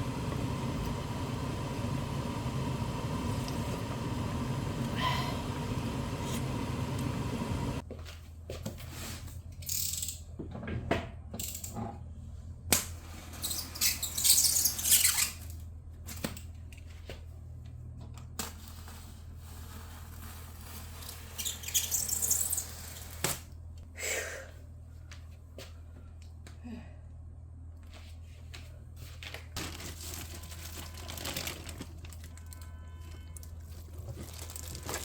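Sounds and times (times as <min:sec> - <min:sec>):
low hum: 0:00.0 - 0:07.8
rustling: 0:29.6 - 0:32.6, 0:33.4 - 0:35.0.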